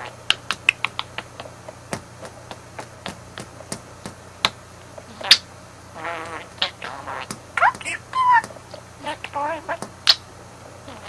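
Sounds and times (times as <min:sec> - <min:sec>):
sharp irregular taps: 0:00.3 - 0:04.6.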